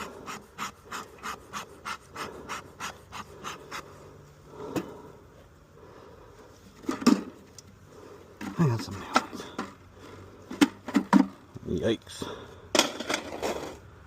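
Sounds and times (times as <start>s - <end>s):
rapid panting breaths: 0.0s - 6.8s.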